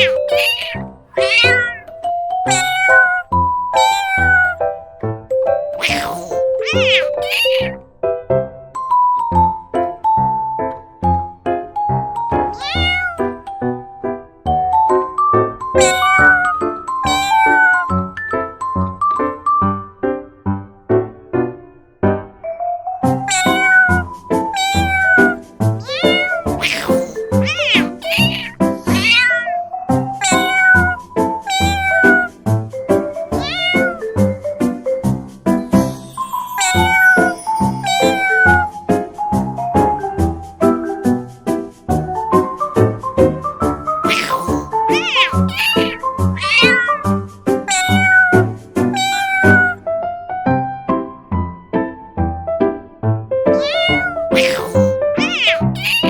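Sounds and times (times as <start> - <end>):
cat meowing: 0.0 - 1.9, 2.5 - 4.6, 5.8 - 7.8, 12.6 - 13.3, 15.8 - 18.0, 23.3 - 29.6, 30.2 - 32.3, 33.3 - 34.2, 36.5 - 38.7, 44.1 - 49.8, 53.6 - 56.0.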